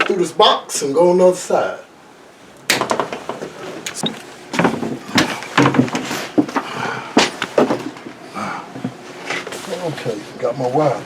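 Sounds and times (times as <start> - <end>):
cable scraping and rustling: 3.0 - 8.1, 8.8 - 11.0.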